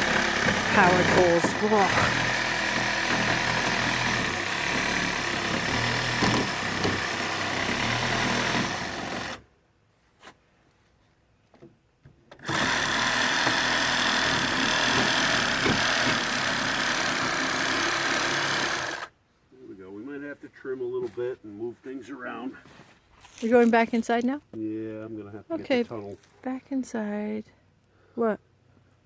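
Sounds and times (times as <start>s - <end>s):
reciprocating saw cutting: 0.0s - 9.4s, 12.4s - 19.1s.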